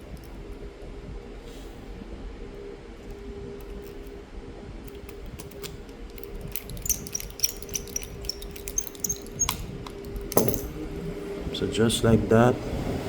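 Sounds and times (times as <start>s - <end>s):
steady low hum: 0.0s - 13.0s
clicks and taps of small parts: 4.9s - 10.7s.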